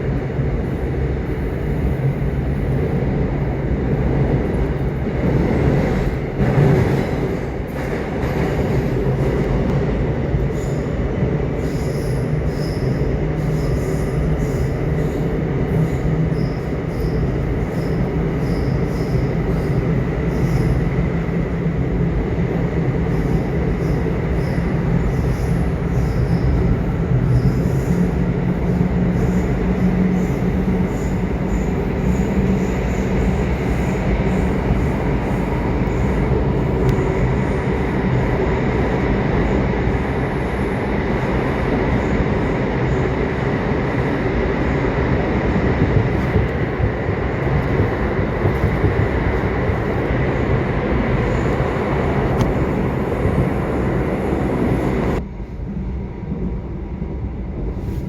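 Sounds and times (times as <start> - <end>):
subway train wheels rumbling: 0.0 - 58.0.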